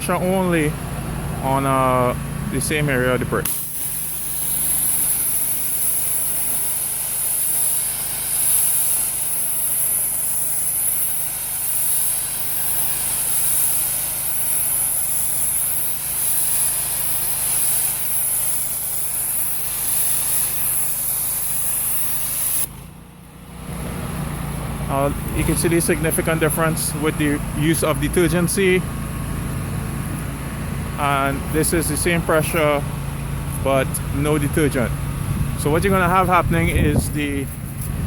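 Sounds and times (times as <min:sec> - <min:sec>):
pressure washer motor humming: 0:00.0 - 0:38.0
water jet spraying a wall: 0:03.4 - 0:22.9, 0:24.9 - 0:30.4, 0:31.0 - 0:32.8.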